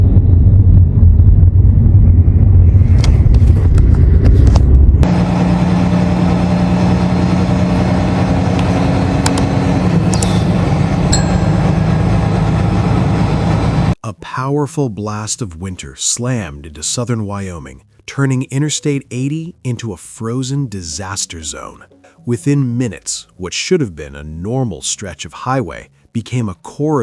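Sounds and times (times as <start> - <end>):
deep engine rumble: 0.0 - 14.0
engine and road drone: 0.0 - 14.0
scattered clicks: 8.6 - 9.5, 10.1 - 10.5.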